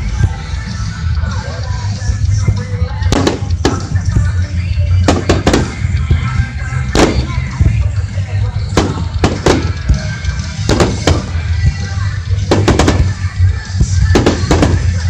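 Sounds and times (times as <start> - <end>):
music: 0.0 - 15.0
firework shells bursting: 3.2 - 4.0, 5.0 - 6.0, 7.0 - 7.6, 8.8 - 11.6, 12.5 - 15.0.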